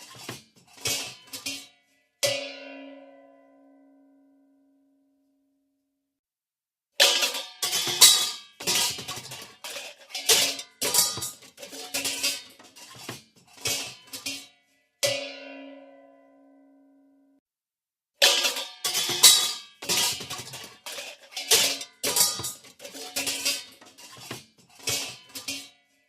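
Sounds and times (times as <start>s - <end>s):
pots and pans clattering: 0.0s - 1.8s, 7.0s - 14.6s, 18.2s - 25.9s
metallic clang ringing: 18.2s - 25.8s.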